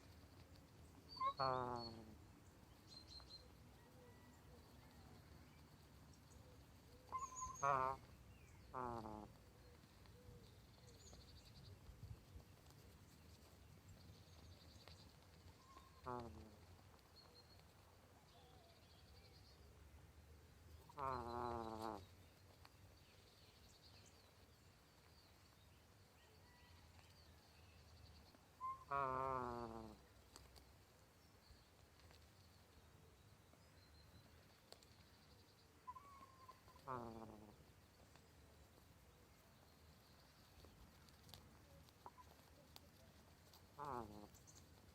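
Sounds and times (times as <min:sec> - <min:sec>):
gosling snoring: 0:28.9 - 0:30.0.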